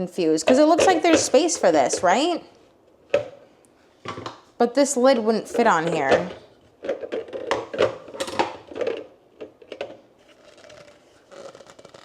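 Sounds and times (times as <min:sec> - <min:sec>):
hard plastic parts clacking: 0:05.6 - 0:10.0.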